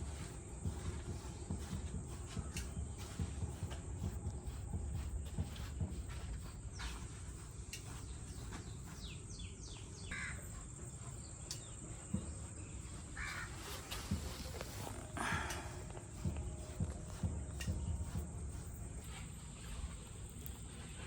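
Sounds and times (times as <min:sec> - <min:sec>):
harsh bird caws: 0:10.1 - 0:10.5, 0:13.2 - 0:13.7.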